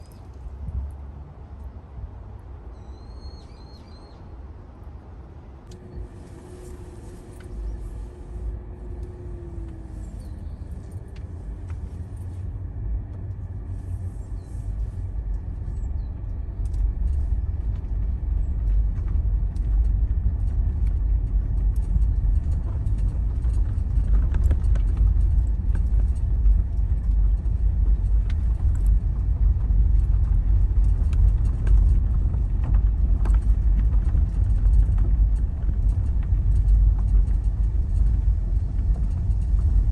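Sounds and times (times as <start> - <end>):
low motor vehicle rumble: 0.0 - 39.9.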